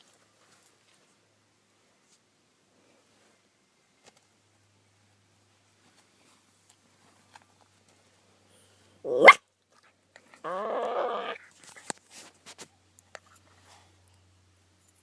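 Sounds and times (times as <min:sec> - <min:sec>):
dog crying: 0:09.1 - 0:09.4, 0:10.4 - 0:11.4.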